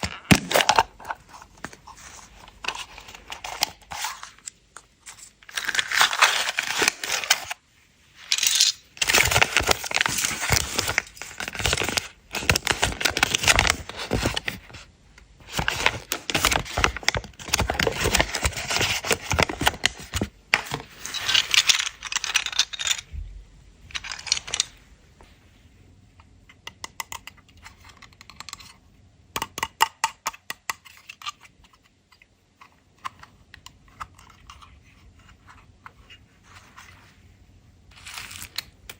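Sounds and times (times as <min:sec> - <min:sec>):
candy wrappers crinkling: 0:05.0 - 0:07.6, 0:08.2 - 0:14.6, 0:21.1 - 0:23.0, 0:23.9 - 0:24.7.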